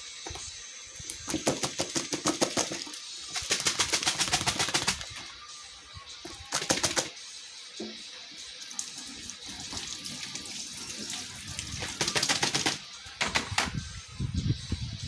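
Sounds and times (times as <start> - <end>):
tap water running into sink: 0.2 - 5.2, 7.8 - 13.8.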